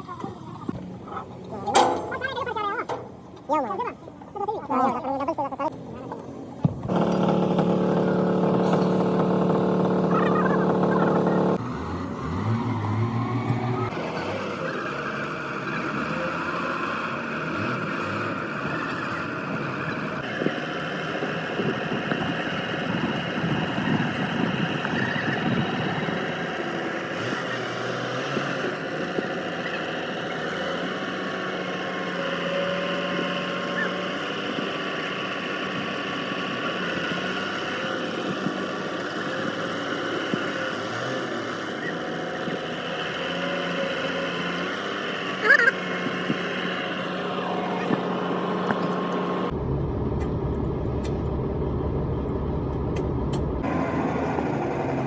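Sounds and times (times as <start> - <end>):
machine running steadily: 6.6 - 11.6.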